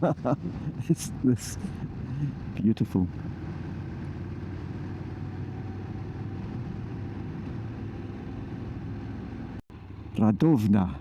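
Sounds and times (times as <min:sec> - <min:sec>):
motorcycle engine cruising: 0:00.0 - 0:10.3
road noise: 0:00.0 - 0:11.0.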